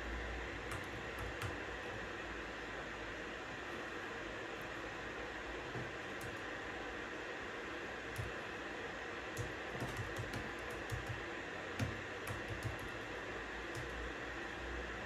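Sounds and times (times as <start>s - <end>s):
keyboard keystroke clicks: 0.7s - 1.7s, 8.1s - 8.4s, 9.4s - 11.2s, 11.8s - 13.1s.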